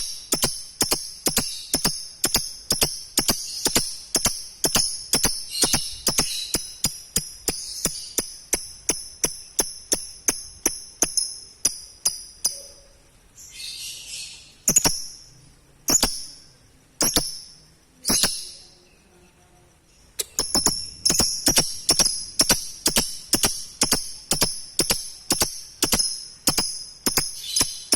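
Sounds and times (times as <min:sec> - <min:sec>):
bird rasp: 0:00.0 - 0:09.0
lovebird chirping: 0:00.0 - 0:27.9.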